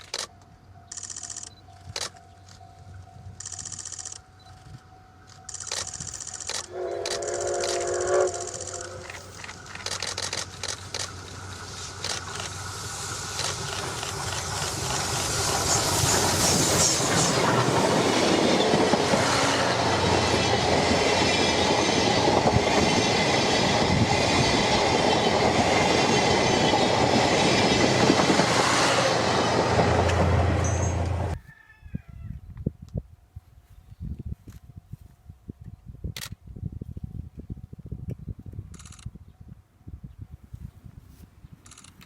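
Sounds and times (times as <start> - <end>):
train rolling rumble: 0.1 - 31.4
train wheel clicks over rail joints: 8.4 - 12.6.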